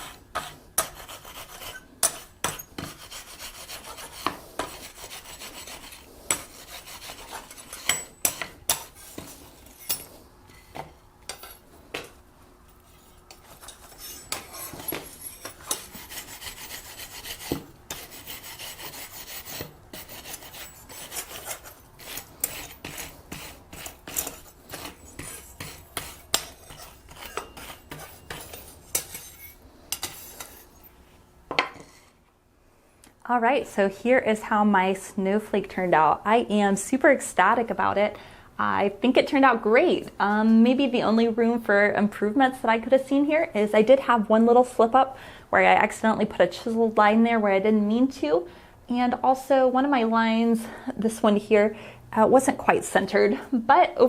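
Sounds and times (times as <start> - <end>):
wire brush scrubbing steel: 0.0 - 10.1, 12.8 - 30.9.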